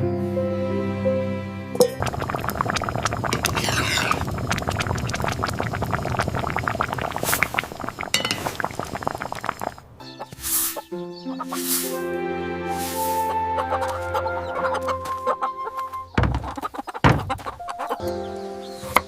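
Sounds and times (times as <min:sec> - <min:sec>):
music: 0:00.0 - 0:02.1, 0:10.0 - 0:16.3, 0:17.6 - 0:19.0.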